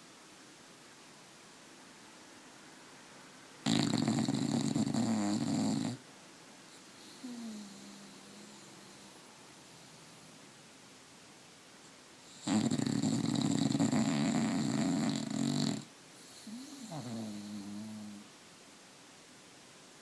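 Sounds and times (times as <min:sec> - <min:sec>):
dog snoring: 0:03.6 - 0:06.0, 0:06.8 - 0:10.2, 0:12.2 - 0:18.3.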